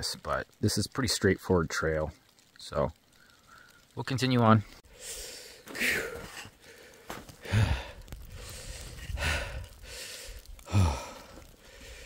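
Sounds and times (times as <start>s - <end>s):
person breathing hard: 4.9s - 12.0s.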